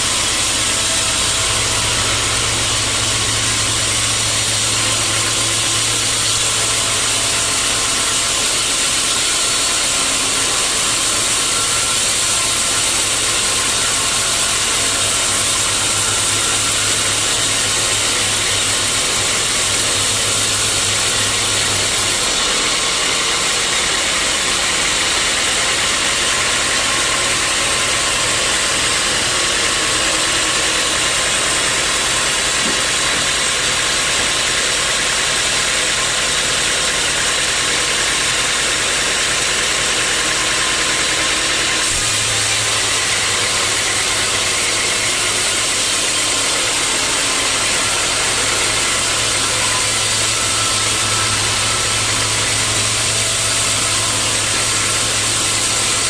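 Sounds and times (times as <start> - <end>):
sawmill machinery hissing: 0.0 - 56.0.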